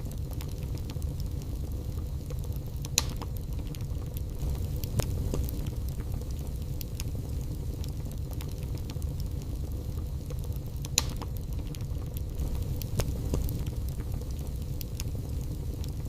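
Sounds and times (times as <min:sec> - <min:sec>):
fire crackles and pops: 0:00.0 - 0:16.0
fire rumbling in fireplace: 0:00.0 - 0:16.0.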